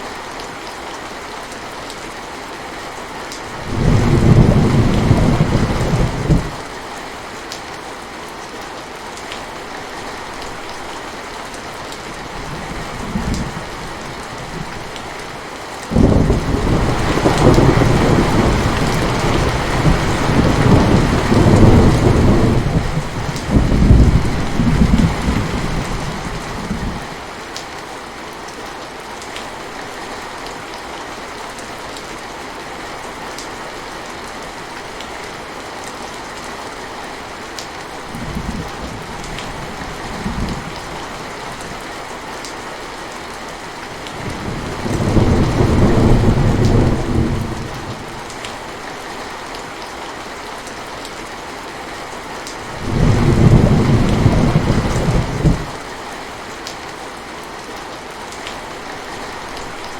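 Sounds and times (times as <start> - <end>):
heavy rain falling: 0.0 - 59.9
thunder rumbling: 3.6 - 6.6, 15.9 - 27.2, 44.0 - 48.4, 52.6 - 55.8.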